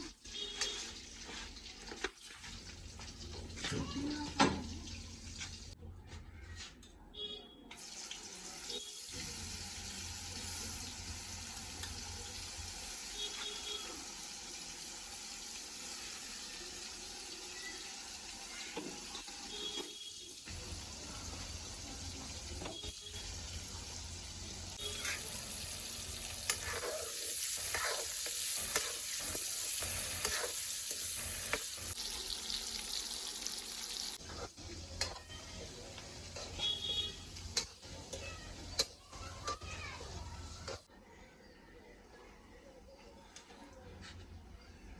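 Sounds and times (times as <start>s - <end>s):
food sizzling in a pan: 0.0s - 5.8s, 7.8s - 40.9s
stirring clicks and scrapes: 26.4s - 31.9s.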